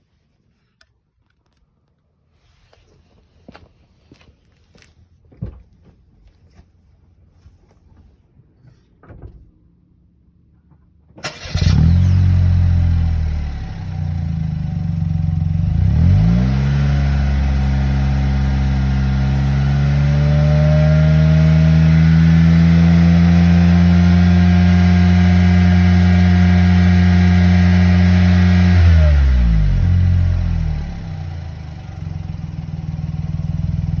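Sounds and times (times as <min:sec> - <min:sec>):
car engine idling and revving: 0:10.7 - 0:34.0.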